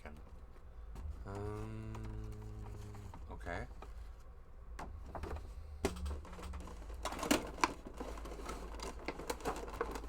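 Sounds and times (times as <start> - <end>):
low steady hum: 0.0 - 10.0
packaging clicks and scrapes: 5.2 - 10.0.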